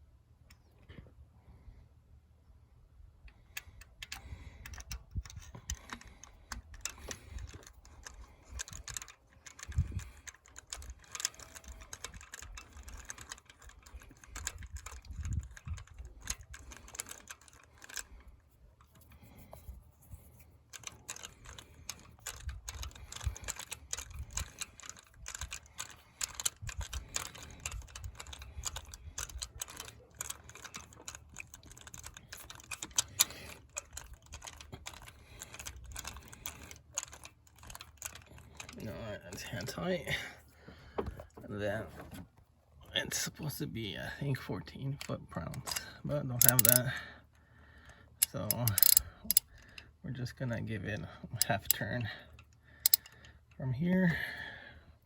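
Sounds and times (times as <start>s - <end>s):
socket ratchet clicking: 46.4s - 46.9s, 48.2s - 49.6s, 52.8s - 53.2s.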